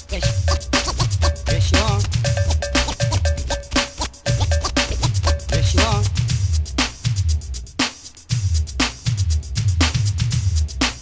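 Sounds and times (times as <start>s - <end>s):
drum machine bass drum: 0.0s - 11.0s
hi-hat ticks: 0.0s - 11.0s.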